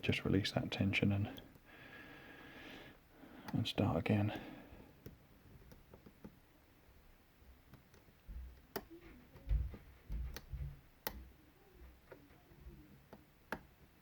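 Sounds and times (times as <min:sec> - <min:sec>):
soft handling bumps: 0:07.4 - 0:14.0.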